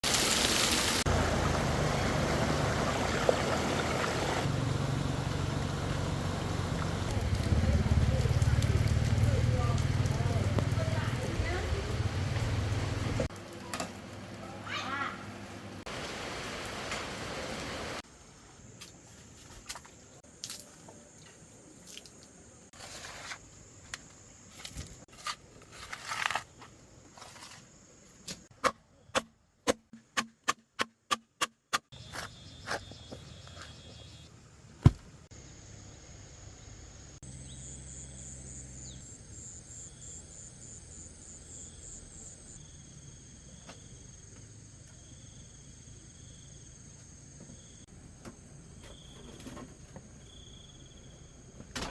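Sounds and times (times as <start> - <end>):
insects chirring: 31.9 - 51.9.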